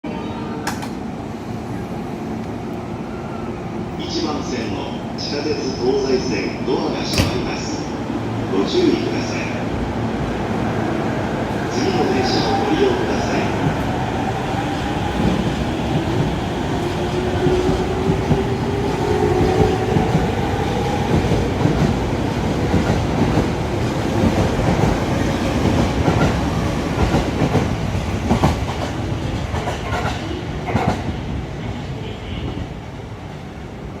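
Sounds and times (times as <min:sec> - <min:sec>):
train cars rumbling: 0:05.6 - 0:32.8.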